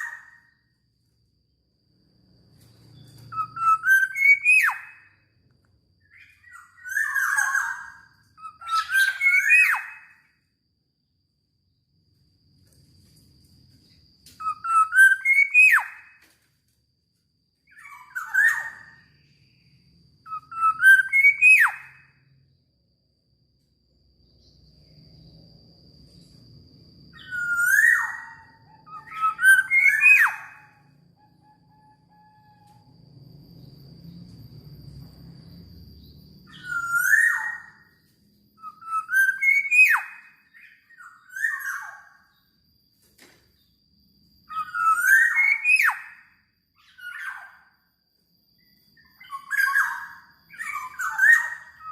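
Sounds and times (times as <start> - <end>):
bird singing fluty whistles: 0.0 - 0.7, 2.6 - 5.3, 6.0 - 10.4, 14.3 - 16.3, 17.6 - 22.5, 26.4 - 42.6, 44.5 - 47.8, 48.6 - 51.9.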